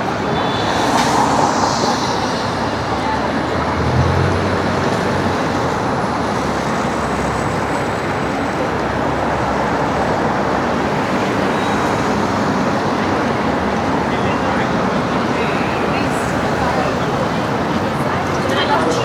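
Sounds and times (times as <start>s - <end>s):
city street traffic: 0.0s - 19.0s.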